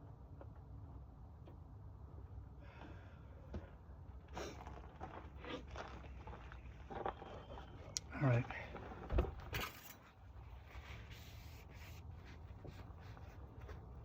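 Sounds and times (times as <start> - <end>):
rustling and scraping handling noise: 4.5 - 14.0.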